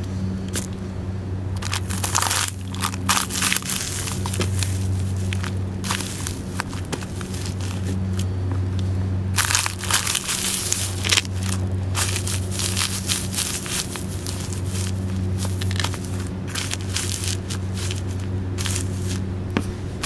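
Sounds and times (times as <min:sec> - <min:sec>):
steady low hum: 0:00.0 - 0:20.0
boots crunching crackers: 0:00.5 - 0:00.8, 0:01.6 - 0:20.0.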